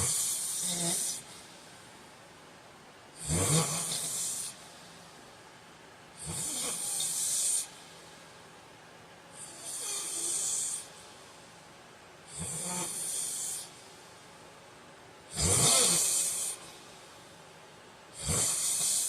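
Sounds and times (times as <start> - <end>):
man snoring with hissing breaths: 0.0 - 1.8, 3.2 - 5.1, 6.2 - 8.2, 9.4 - 11.2, 12.2 - 14.2, 15.3 - 17.1, 18.1 - 19.0.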